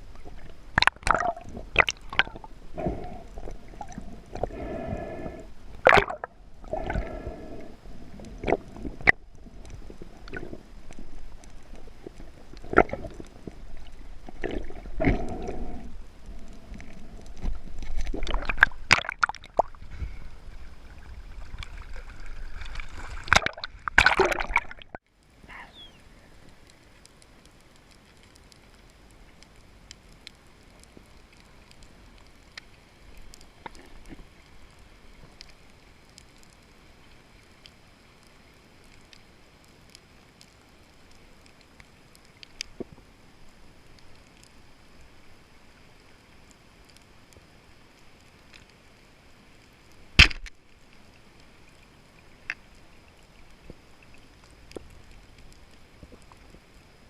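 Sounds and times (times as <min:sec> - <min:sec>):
faint underwater clicks and crackles: 0:00.0 - 0:57.0.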